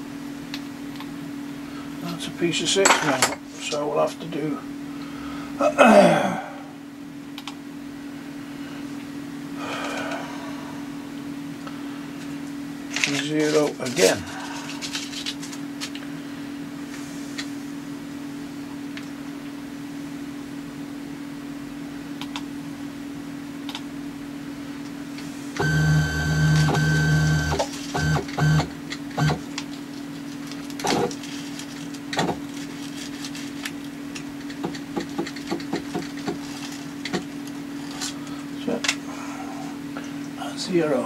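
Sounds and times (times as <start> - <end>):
steady hum: 0.0 - 41.0
scattered clicks: 7.4 - 7.6, 22.2 - 22.5
stepper motor whine: 25.6 - 29.4.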